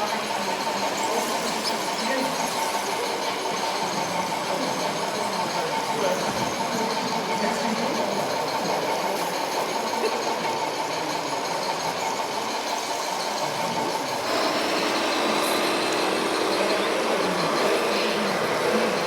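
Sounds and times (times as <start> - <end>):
small electric motors whining: 12.7 - 19.0.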